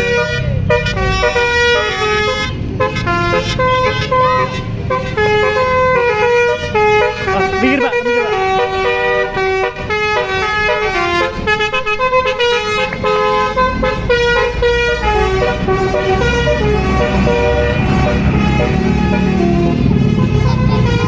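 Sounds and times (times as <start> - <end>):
bus engine rumble: 0.0 - 21.0
bus horn playing a tune: 0.0 - 21.0.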